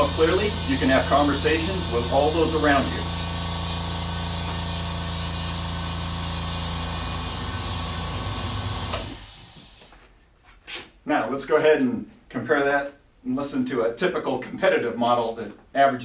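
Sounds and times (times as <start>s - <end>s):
air hissing: 0.0s - 10.0s
air compressor motor hum: 0.0s - 10.1s.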